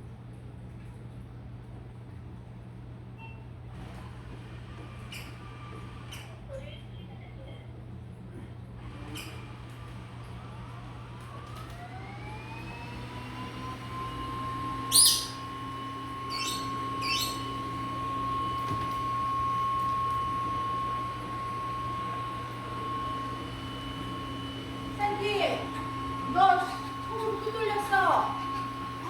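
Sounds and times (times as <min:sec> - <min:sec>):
robot vacuum motor whine: 0:10.5 - 0:29.0
parrot squawking: 0:14.9 - 0:15.5, 0:16.2 - 0:17.6.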